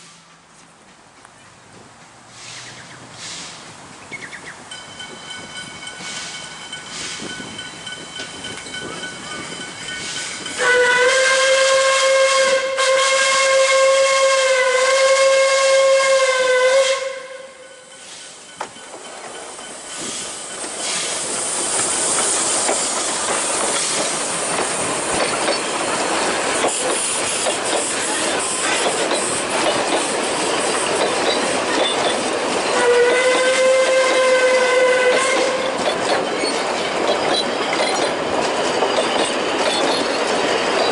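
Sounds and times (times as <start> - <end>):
train wheels clattering on rails: 0.0 - 11.8, 17.8 - 40.9
steam hissing: 2.3 - 3.8, 5.2 - 10.8, 17.8 - 40.9
steam whistle blast: 10.6 - 18.3, 32.7 - 35.8.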